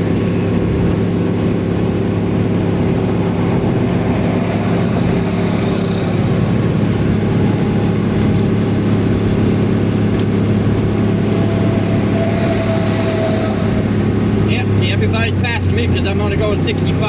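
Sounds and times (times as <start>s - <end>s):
vehicle engine and road drone: 0.0s - 17.0s.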